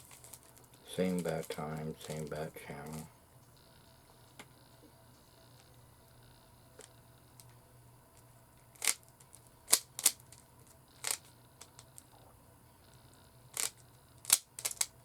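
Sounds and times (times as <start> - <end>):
puzzle cube twisting clicks: 8.8 - 12.0, 13.5 - 15.0.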